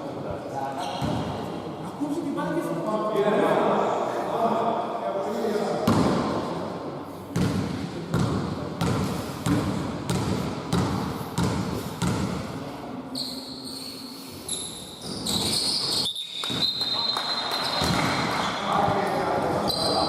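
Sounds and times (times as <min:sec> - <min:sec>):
shoe squeaks: 0:00.8 - 0:01.3, 0:13.1 - 0:17.9, 0:19.6 - 0:20.0
basketball bouncing on gym floor: 0:00.9 - 0:01.4, 0:07.3 - 0:12.5, 0:17.8 - 0:18.2.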